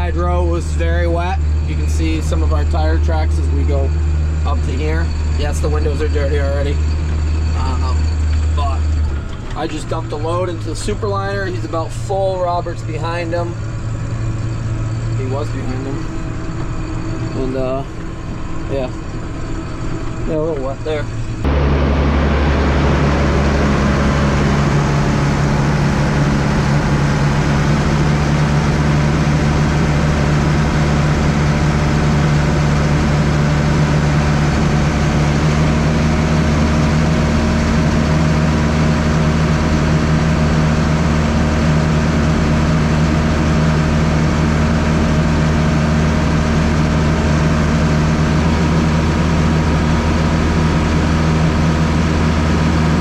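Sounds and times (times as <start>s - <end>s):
tractor diesel engine droning: 0.0s - 53.0s.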